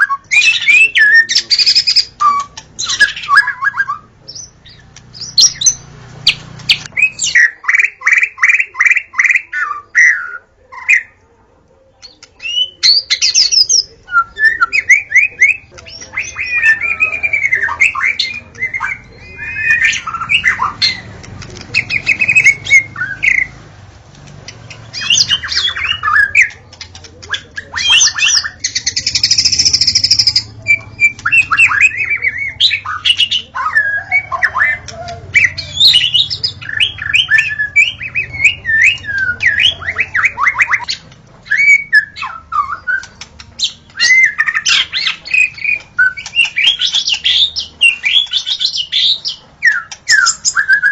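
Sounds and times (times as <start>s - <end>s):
songbird singing whistles and trills: 0.0s - 11.2s, 12.0s - 23.5s, 24.5s - 50.9s
bird harsh rasping call: 12.0s - 23.8s, 24.4s - 50.9s.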